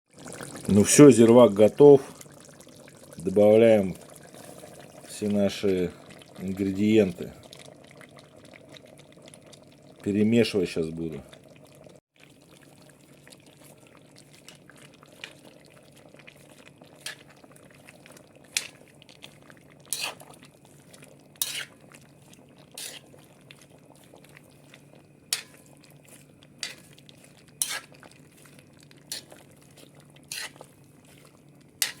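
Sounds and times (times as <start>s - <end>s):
utensil scraping cooking pot: 13.4s - 32.0s.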